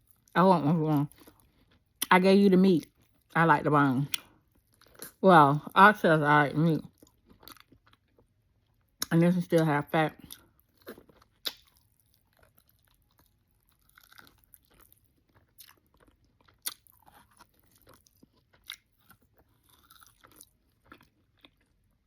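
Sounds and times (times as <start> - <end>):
person chewing with wet smacks: 0.9 - 2.1, 4.1 - 5.2, 6.8 - 22.0.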